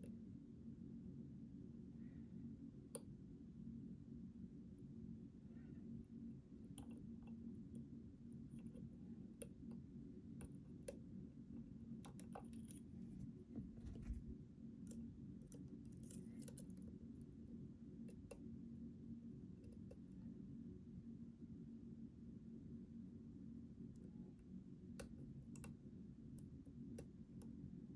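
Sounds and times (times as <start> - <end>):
low steady hum: 0.0 - 27.9
lock pick clicking and scraping: 15.5 - 16.8.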